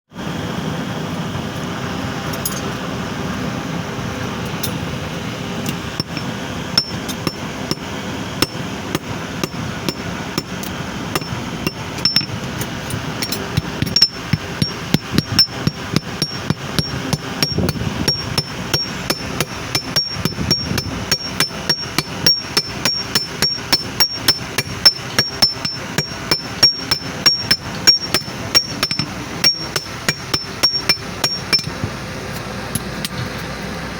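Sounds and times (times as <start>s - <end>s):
hammer striking metal on anvil: 6.0s - 12.4s, 13.2s - 31.8s.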